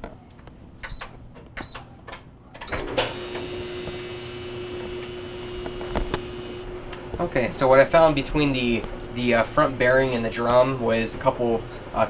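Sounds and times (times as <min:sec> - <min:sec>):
control panel beeps and clicks: 0:00.8 - 0:02.0
dryer humming: 0:00.9 - 0:12.0.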